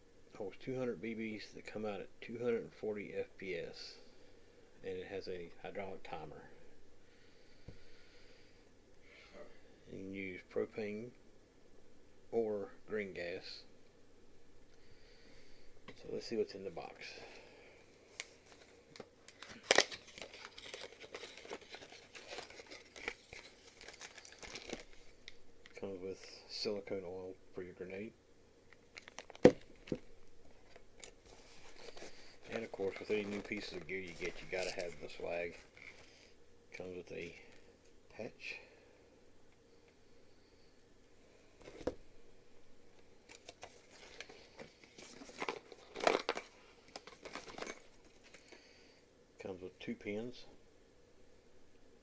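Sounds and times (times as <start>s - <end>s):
packaging crinkling and rustling: 18.0s - 25.9s, 28.7s - 37.6s, 43.0s - 48.6s.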